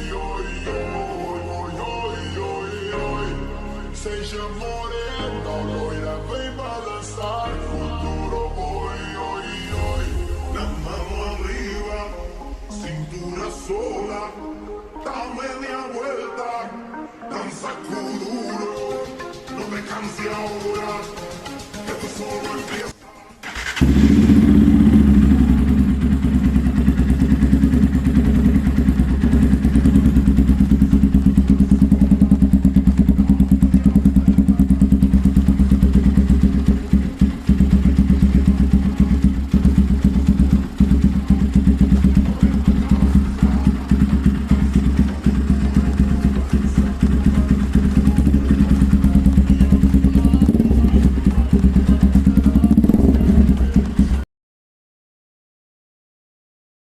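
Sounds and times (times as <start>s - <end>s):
motorcycle idling: 23.4s - 54.2s.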